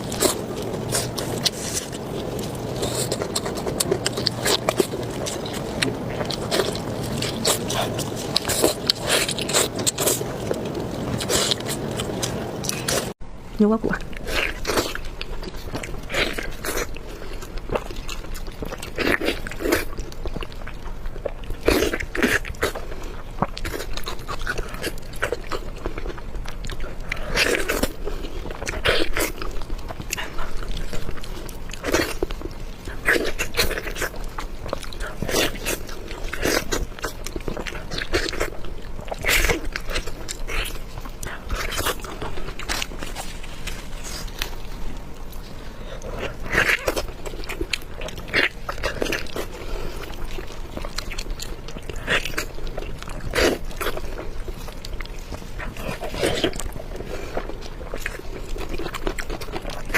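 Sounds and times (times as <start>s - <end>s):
person chewing food: 0.0s - 13.2s, 13.9s - 59.9s.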